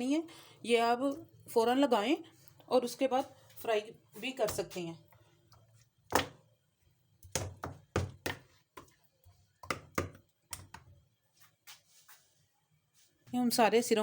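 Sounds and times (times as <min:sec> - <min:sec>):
mixing bowl knocking: 0:07.2 - 0:09.0, 0:09.6 - 0:10.9.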